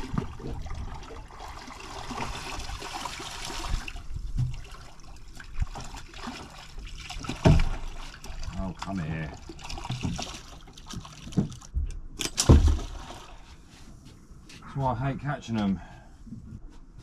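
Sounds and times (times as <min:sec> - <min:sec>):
water splashing and trickling: 0:00.0 - 0:11.8, 0:12.4 - 0:13.6.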